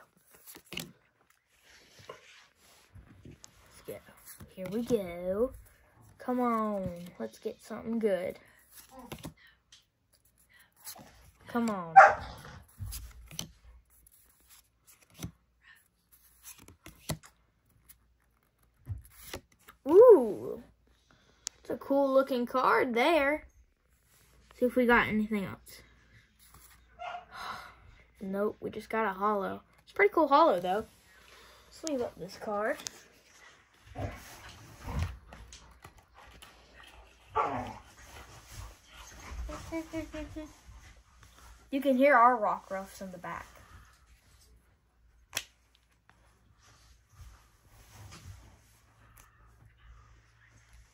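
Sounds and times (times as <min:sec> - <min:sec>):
dogs barking and whining: 0:11.9 - 0:12.6, 0:26.9 - 0:27.5, 0:37.1 - 0:38.1.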